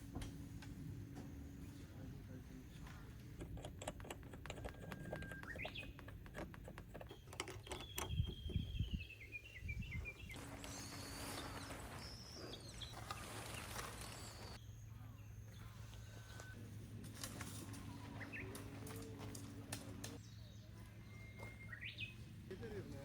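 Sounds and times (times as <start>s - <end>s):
birds whistling: 4.5s - 6.3s, 6.9s - 16.6s, 17.8s - 19.0s, 20.2s - 22.9s.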